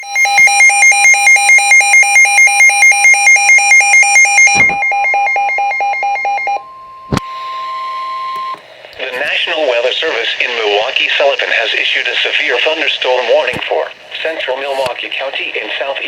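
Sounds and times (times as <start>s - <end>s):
steady single alarm tone: 0.2s - 8.6s.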